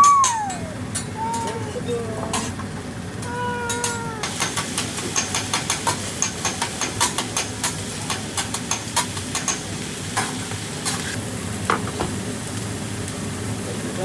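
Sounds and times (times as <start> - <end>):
utensils tapping metal plate: 0.0 - 11.0
food sizzling on a griddle: 0.0 - 14.0.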